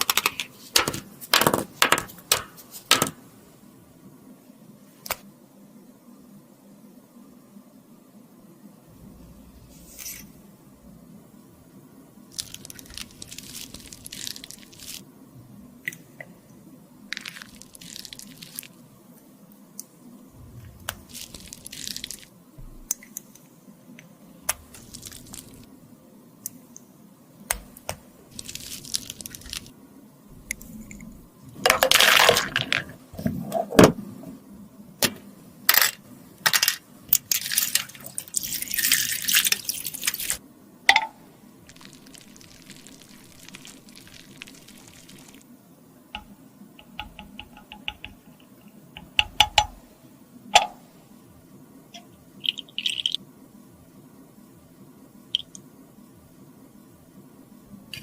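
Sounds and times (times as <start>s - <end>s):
tools scraping and rubbing: 9.7s - 10.4s.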